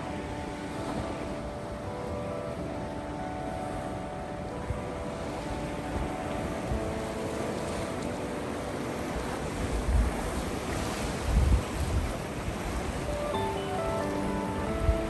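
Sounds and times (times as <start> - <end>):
sea surf washing on shore: 0.0 - 15.0
wind buffeting microphone: 3.8 - 15.0.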